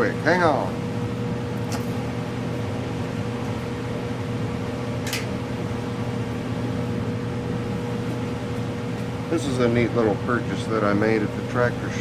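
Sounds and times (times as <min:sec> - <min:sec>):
heater fan drone: 0:00.0 - 0:12.0.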